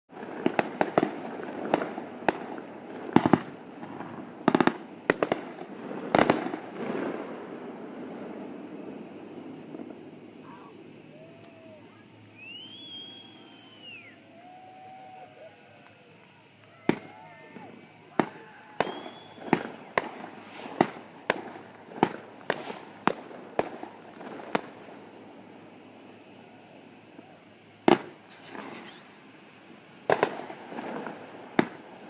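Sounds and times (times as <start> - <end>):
fireworks bangs with echo: 0.1 - 11.7, 16.7 - 25.6, 27.2 - 29.1, 30.0 - 32.0.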